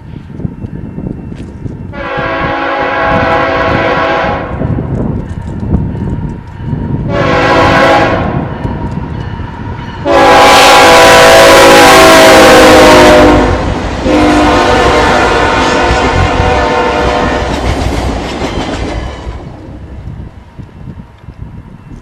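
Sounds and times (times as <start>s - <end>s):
train rumbling: 0.0s - 22.0s
locomotive air horn blasts: 1.9s - 4.7s, 7.1s - 8.5s, 10.0s - 17.5s.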